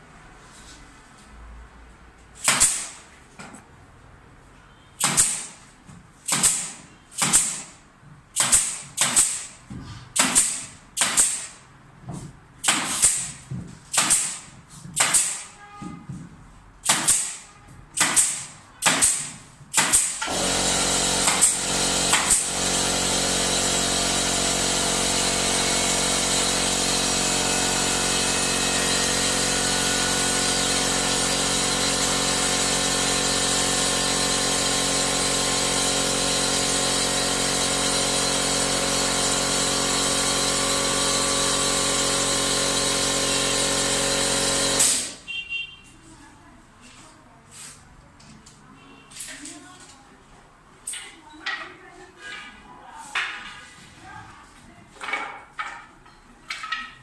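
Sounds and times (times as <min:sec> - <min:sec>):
power tool running: 0:19.8 - 0:45.2.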